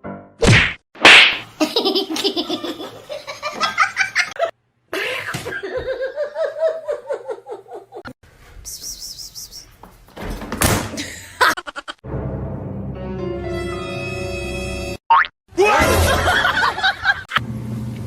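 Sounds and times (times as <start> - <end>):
high-pitched laughter: 11.0 - 12.0.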